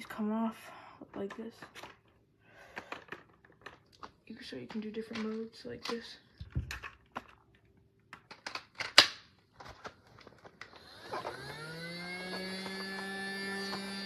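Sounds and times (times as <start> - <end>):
plastic clicks: 1.1 - 10.8
toy vacuum motor whining: 10.6 - 14.0.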